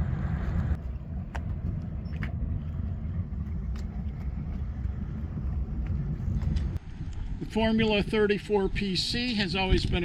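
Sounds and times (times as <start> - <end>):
boat engines rumbling: 0.0 - 7.3.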